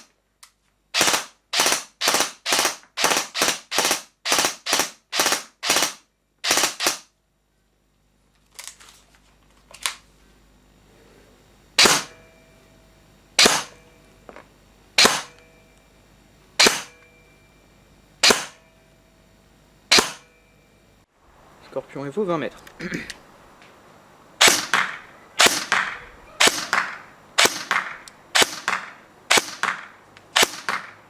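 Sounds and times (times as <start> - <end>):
airsoft gun shots: 1.0 - 7.1, 11.8 - 12.2, 13.4 - 13.8, 15.0 - 15.4, 16.6 - 17.0, 18.2 - 18.7, 19.9 - 20.3, 24.4 - 31.0.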